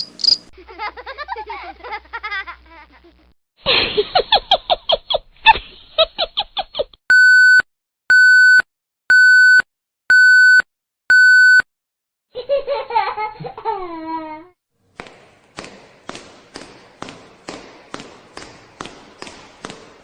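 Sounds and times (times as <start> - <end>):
laughter sound effect: 0.6 - 7.0
electronic alarm beeping: 7.1 - 11.7.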